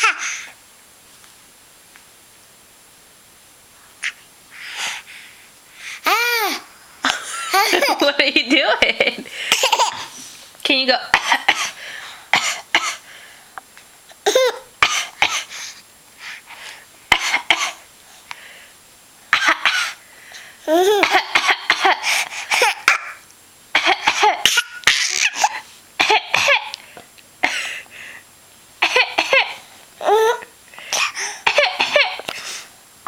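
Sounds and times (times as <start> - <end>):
child laugh-like sounds: 6.1 - 8.1, 9.4 - 10.2, 20.7 - 23.2, 23.8 - 26.8
child coughing: 9.5 - 10.1, 11.2 - 13.0, 14.2 - 15.5, 17.1 - 17.8, 19.4 - 20.0, 23.8 - 26.7, 28.8 - 32.3.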